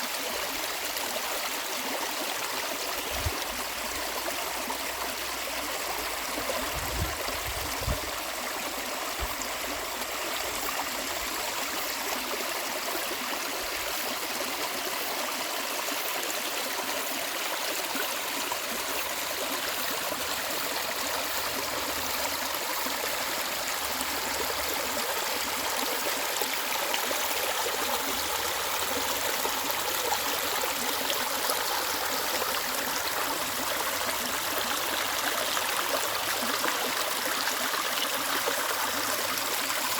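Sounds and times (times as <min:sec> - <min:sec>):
stream rushing over rocks: 0:15.0 - 0:39.9.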